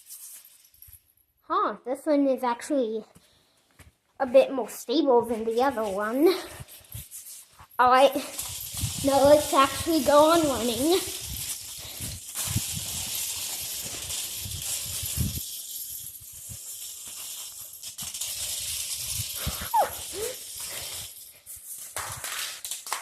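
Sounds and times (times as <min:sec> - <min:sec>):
toy car scraping along the ground: 0:05.6 - 0:22.5.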